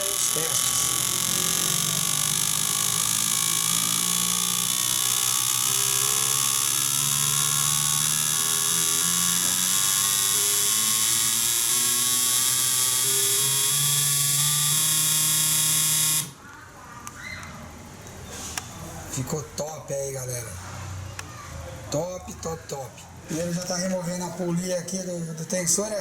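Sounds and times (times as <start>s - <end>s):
fuel injectors buzzing: 0.0s - 16.4s
pump humming: 0.0s - 16.4s.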